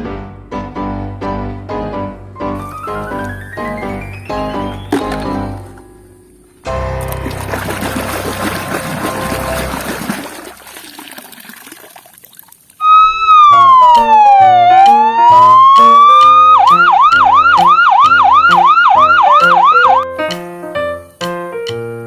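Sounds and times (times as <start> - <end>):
background music: 0.0 - 10.3, 12.8 - 22.0
water pouring: 2.6 - 5.9, 7.0 - 12.8
electronic siren wailing and yelping: 12.8 - 20.0.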